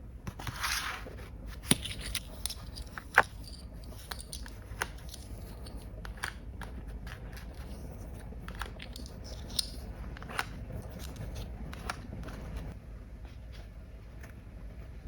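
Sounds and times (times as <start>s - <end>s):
faint low hum: 0.0s - 15.0s
plastic toy pieces clicking: 8.5s - 11.9s.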